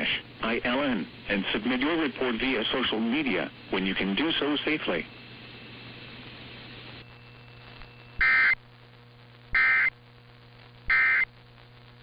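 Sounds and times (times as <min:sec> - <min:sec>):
low steady hum: 0:00.0 - 0:12.0
digital data tone bursts: 0:08.1 - 0:08.6, 0:09.6 - 0:09.9, 0:10.9 - 0:11.3.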